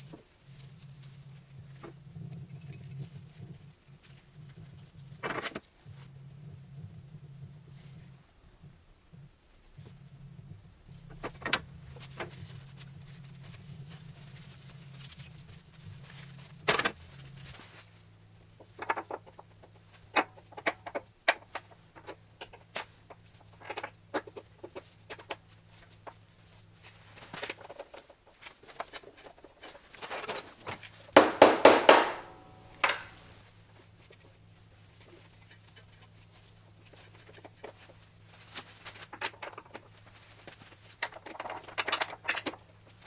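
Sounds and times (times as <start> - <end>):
loud metallic strikes: 31.2 - 33.2
tools clicking and knocking: 31.2 - 33.3.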